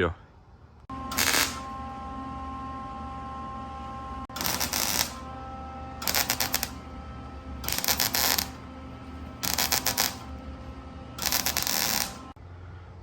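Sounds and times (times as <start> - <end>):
welder crackling bursts: 0.9 - 1.9, 4.3 - 5.3, 6.0 - 6.9, 7.6 - 8.6, 9.4 - 10.4, 11.2 - 12.4.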